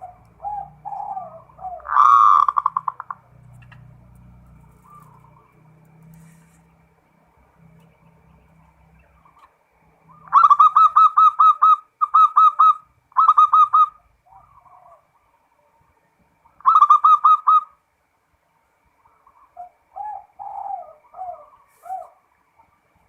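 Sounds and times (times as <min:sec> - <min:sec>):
dove cooing: 0:00.0 - 0:05.7, 0:09.1 - 0:15.4, 0:16.6 - 0:17.8, 0:19.0 - 0:22.3.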